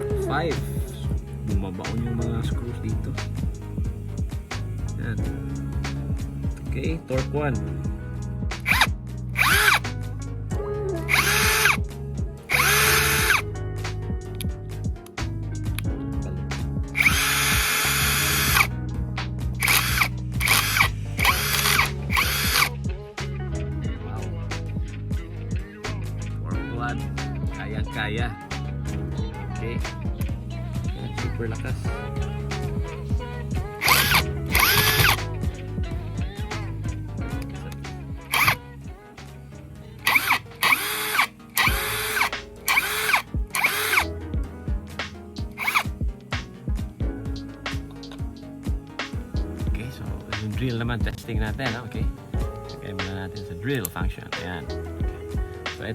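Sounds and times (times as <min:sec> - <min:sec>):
background music: 0:00.0 - 0:55.9
cordless drill motor whine: 0:08.6 - 0:09.8, 0:11.0 - 0:11.8, 0:12.5 - 0:13.4, 0:17.0 - 0:18.7, 0:19.6 - 0:22.8, 0:32.1 - 0:35.6, 0:38.2 - 0:38.6, 0:39.9 - 0:44.1, 0:45.5 - 0:46.0
impact driver bursts: 0:08.6 - 0:09.8, 0:11.1 - 0:11.8, 0:12.5 - 0:13.4, 0:17.0 - 0:18.7, 0:19.6 - 0:22.7, 0:33.8 - 0:35.3, 0:38.3 - 0:38.6, 0:40.0 - 0:44.1, 0:45.6 - 0:46.0.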